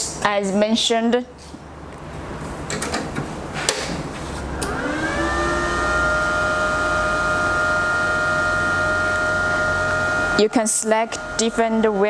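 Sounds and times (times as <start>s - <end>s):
motor whine spinning up: 4.4s - 12.0s.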